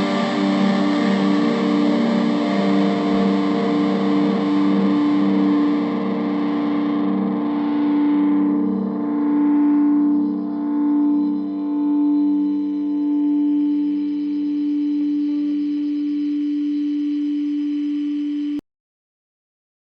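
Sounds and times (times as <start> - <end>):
distorted electric guitar chord: 0.0 - 14.2.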